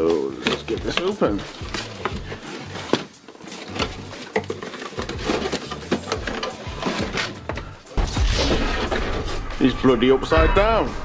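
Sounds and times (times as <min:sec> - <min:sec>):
cardboard packaging rustling: 0:00.0 - 0:07.9.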